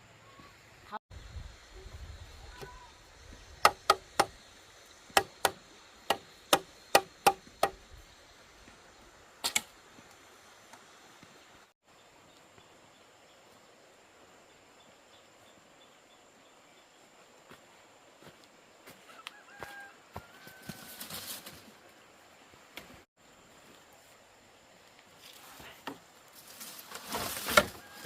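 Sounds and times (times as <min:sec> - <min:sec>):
sharp knocks: 0:03.6 - 0:04.3, 0:05.2 - 0:07.8.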